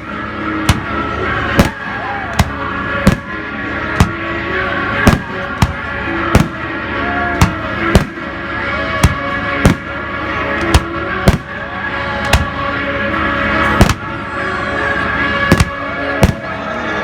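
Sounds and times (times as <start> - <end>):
fireworks bangs: 0.0 - 6.8, 7.4 - 8.3, 9.0 - 11.7, 13.7 - 14.2, 15.5 - 16.6
music playing: 0.0 - 17.0.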